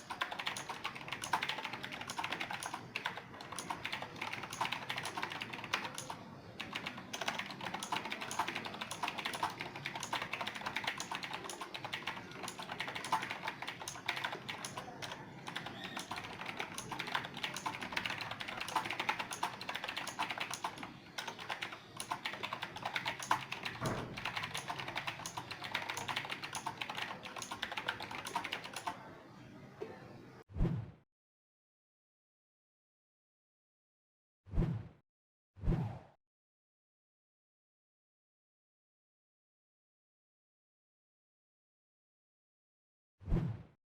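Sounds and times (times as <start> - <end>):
mechanical keyboard typing: 0.0 - 29.0
thump: 23.8 - 24.2.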